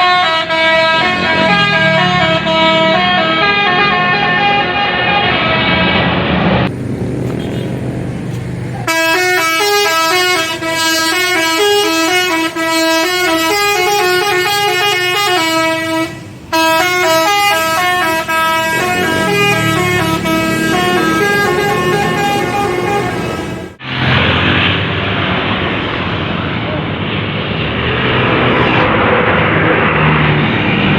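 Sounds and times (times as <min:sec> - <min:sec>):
musical air horn melody: 0:00.0 - 0:05.8, 0:07.2 - 0:23.8.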